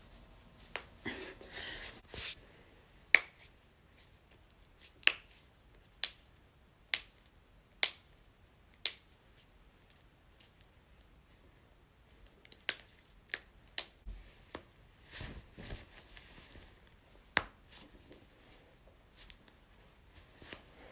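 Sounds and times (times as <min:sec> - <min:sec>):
soft rubbing noise: 0:01.8 - 0:02.4, 0:14.1 - 0:16.8.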